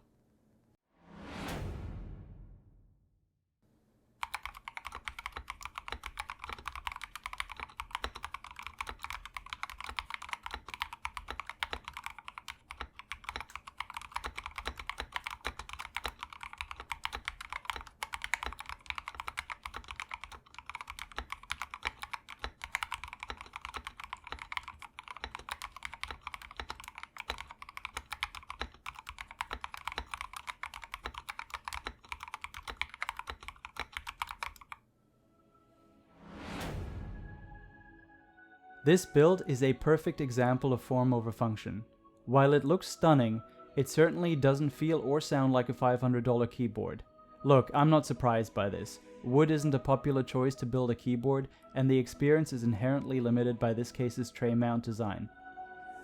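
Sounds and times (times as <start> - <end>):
fast typing on mechanical keyboard: 4.2 - 34.8.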